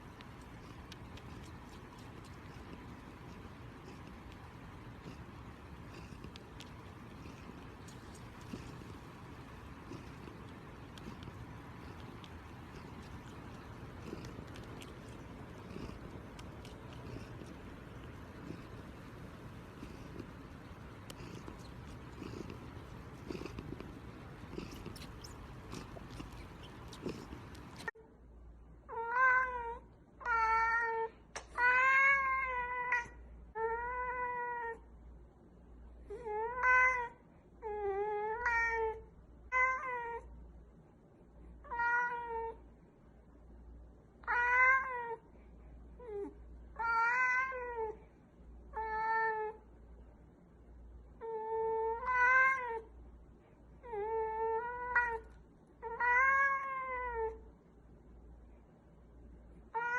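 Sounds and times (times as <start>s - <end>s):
cat meowing: 41.7s - 42.6s, 46.8s - 47.9s.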